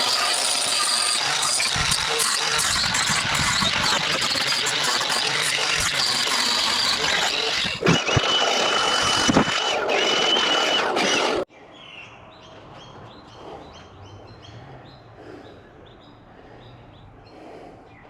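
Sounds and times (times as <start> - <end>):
chainsaw running: 0.0 - 11.5
bird chirping: 11.5 - 18.0.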